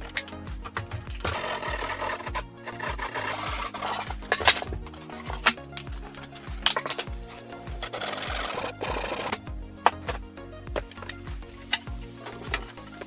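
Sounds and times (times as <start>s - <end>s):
background music with steady beat: 0.0s - 13.0s
rasping scraping strokes: 0.0s - 13.0s.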